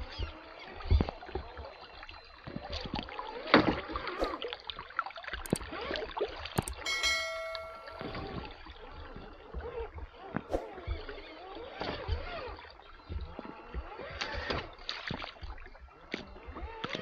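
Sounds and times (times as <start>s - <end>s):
short ringing tone: 6.8s - 8.3s.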